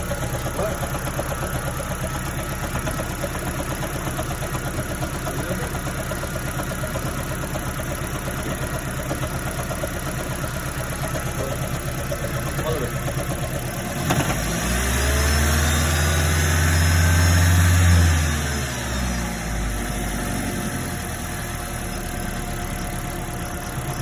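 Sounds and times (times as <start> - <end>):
car engine knocking: 0.0 - 14.9, 21.0 - 24.0.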